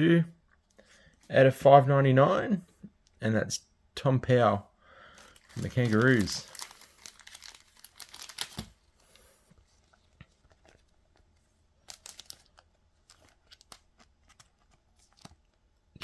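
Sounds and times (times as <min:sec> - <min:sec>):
plastic crinkling and rustling: 0:05.2 - 0:15.6.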